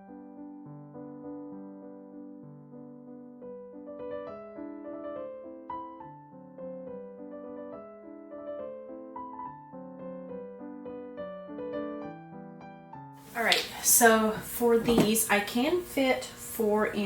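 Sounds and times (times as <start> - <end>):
gentle piano music: 0.0 - 15.0.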